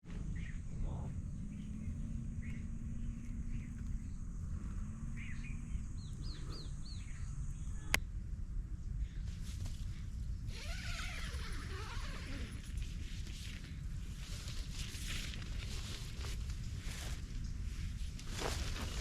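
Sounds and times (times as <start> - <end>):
birds chirping: 0.0 - 8.0
low rumble: 0.0 - 10.5.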